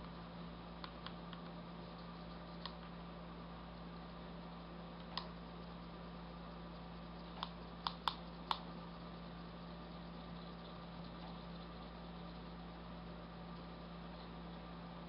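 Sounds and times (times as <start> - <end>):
steady low hum: 0.0 - 15.0
light sharp clicks: 0.8 - 2.9, 5.0 - 5.4, 7.3 - 8.7.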